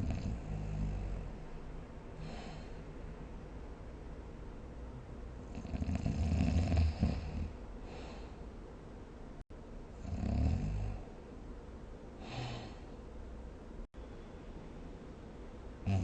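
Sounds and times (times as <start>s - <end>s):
person snoring: 0.0s - 1.3s, 5.5s - 7.6s, 10.0s - 11.0s
breathy sound: 12.2s - 13.0s.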